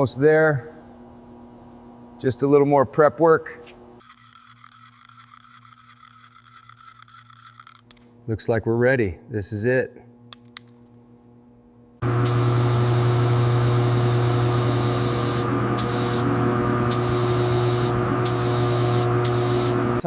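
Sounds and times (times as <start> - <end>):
motor hum: 10.2 - 20.0
paint spray gun hissing: 12.2 - 16.3, 16.9 - 19.8.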